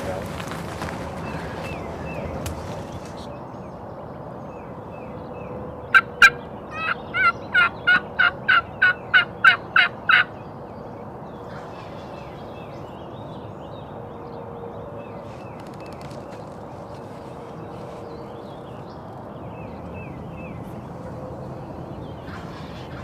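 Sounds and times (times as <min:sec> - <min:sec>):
turkey clucks: 0:05.9 - 0:10.3
turkey yelping: 0:05.9 - 0:10.3.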